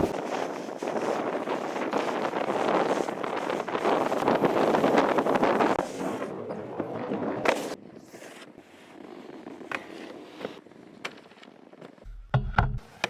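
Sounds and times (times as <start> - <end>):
snowboard scraping over snow: 0.0 - 12.1.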